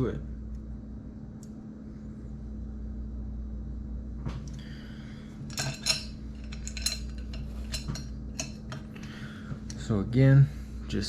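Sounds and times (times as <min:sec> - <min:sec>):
low steady hum: 0:00.0 - 0:11.0
metal tool parts clinking: 0:05.5 - 0:09.1.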